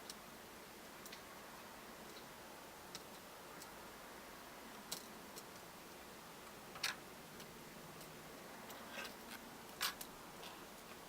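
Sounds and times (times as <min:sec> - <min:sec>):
faint background hiss: 0:00.0 - 0:11.0.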